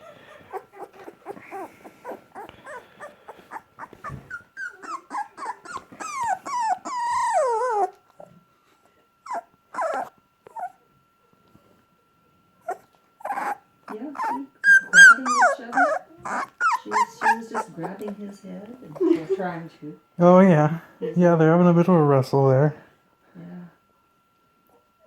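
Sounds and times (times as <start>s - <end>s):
dog grumbles: 0.0s - 7.9s, 12.7s - 18.2s
dogs growling and whining: 0.0s - 8.5s, 9.2s - 10.8s, 12.6s - 18.2s
dog long wavering whine: 0.0s - 19.4s.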